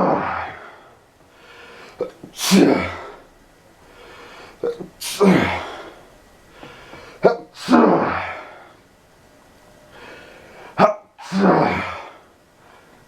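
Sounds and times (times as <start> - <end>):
person sneezing: 2.0 - 3.2, 4.6 - 5.9, 7.2 - 8.5, 10.8 - 12.2
sharp intake of breath: 9.9 - 13.0.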